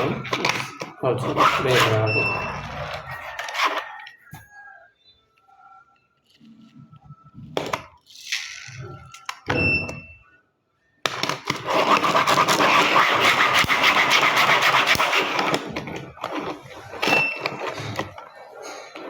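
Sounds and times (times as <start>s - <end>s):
toy wheels scraping: 0.0s - 4.3s, 11.2s - 19.0s.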